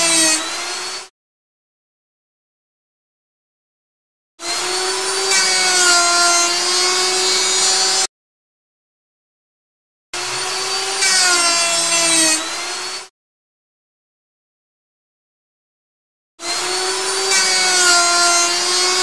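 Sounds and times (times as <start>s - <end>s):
power tool motor whining: 0.0s - 1.1s, 4.4s - 8.1s, 10.2s - 13.1s, 16.4s - 19.0s.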